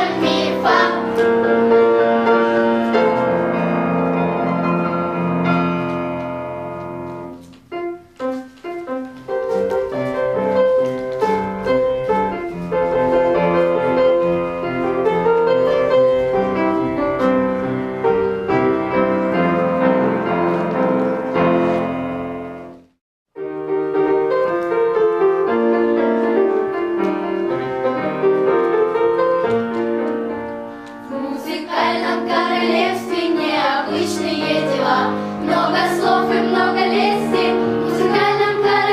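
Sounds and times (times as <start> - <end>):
voices singing: 0.0 - 1.2, 31.1 - 38.9
classical piano music: 0.0 - 38.9.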